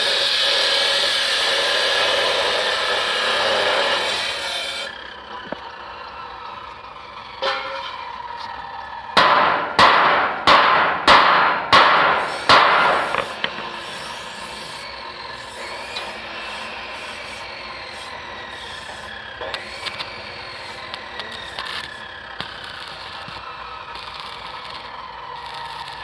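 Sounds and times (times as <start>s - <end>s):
hand tool scraping strokes: 0.0s - 5.5s, 11.7s - 26.0s.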